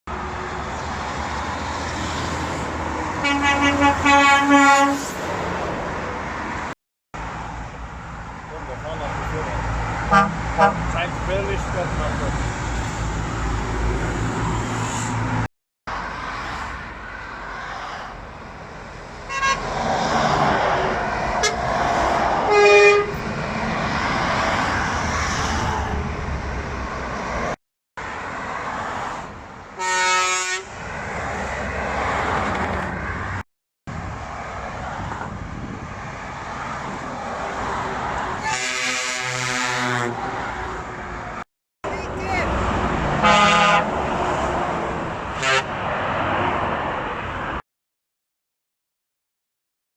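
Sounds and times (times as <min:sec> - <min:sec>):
passing road traffic: 0:00.1 - 0:47.6
truck air horn blasts: 0:03.2 - 0:05.2, 0:10.0 - 0:11.0, 0:19.3 - 0:19.6, 0:21.4 - 0:21.7, 0:22.5 - 0:23.2, 0:29.8 - 0:30.7, 0:38.4 - 0:40.2, 0:43.2 - 0:43.9, 0:45.3 - 0:45.7.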